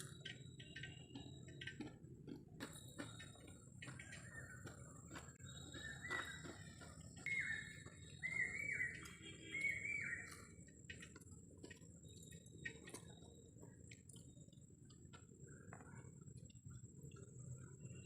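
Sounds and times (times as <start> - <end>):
bird calling: 2.6 - 13.6.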